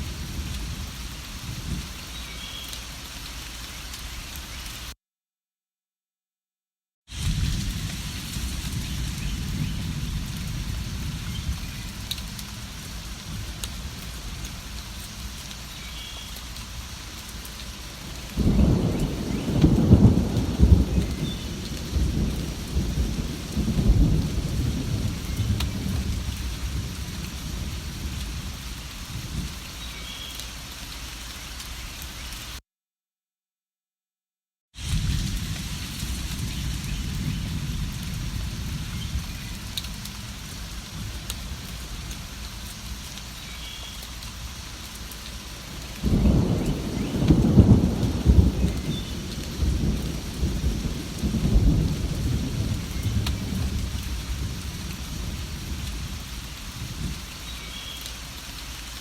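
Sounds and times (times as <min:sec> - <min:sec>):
steady rain falling: 0:00.0 - 0:05.0, 0:07.1 - 0:32.6, 0:34.8 - 0:59.0
low roll of thunder: 0:07.1 - 0:14.7, 0:18.0 - 0:29.6, 0:34.8 - 0:42.5, 0:45.7 - 0:57.3.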